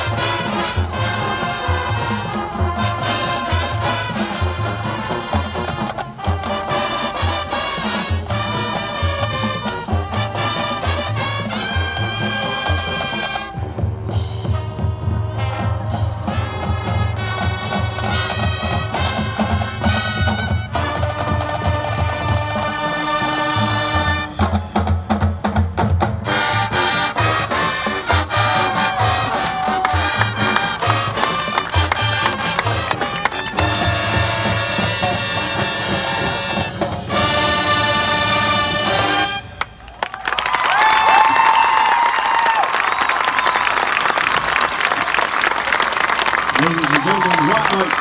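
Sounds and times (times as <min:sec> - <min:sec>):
brass playing a tune: 0:00.0 - 0:24.7, 0:26.2 - 0:39.8
marching percussion: 0:00.0 - 0:39.8, 0:40.6 - 0:48.0.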